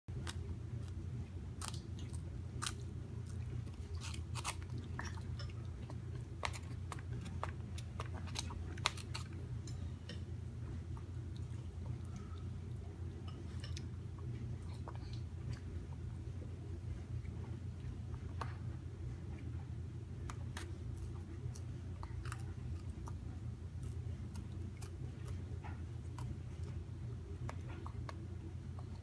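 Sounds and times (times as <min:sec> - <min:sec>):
steady low hum: 0:00.1 - 0:29.0
crackers crunching being chewed: 0:01.6 - 0:09.8, 0:20.2 - 0:29.0.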